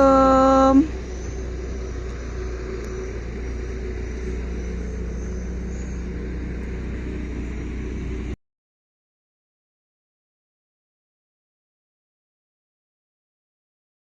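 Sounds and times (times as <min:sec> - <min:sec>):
faint even hum: 0:00.0 - 0:08.4
vehicle engine rumble: 0:00.0 - 0:08.4.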